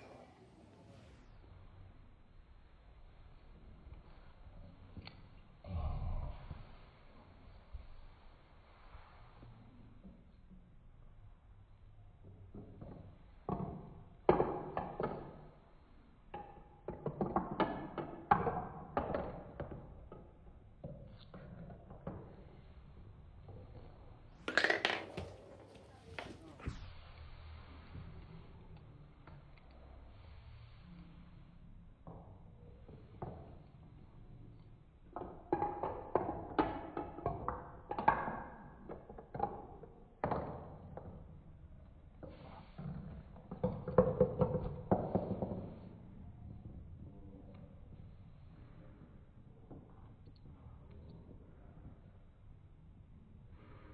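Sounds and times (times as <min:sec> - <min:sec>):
marbles clicking on plastic track: 0:24.4 - 0:25.4.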